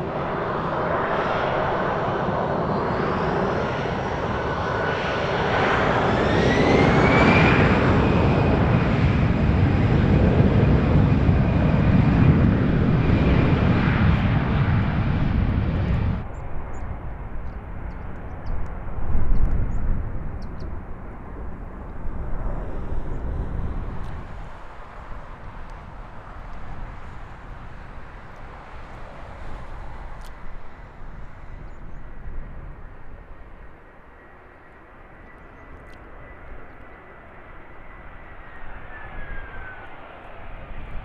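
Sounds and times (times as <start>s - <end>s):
airliner engines whining: 0.0s - 41.0s.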